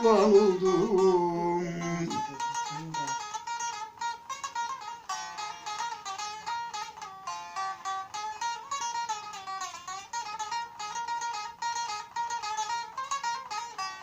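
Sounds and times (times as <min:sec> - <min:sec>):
person singing folk song: 0:00.0 - 0:03.7
plucked string instrument melody: 0:00.0 - 0:14.0.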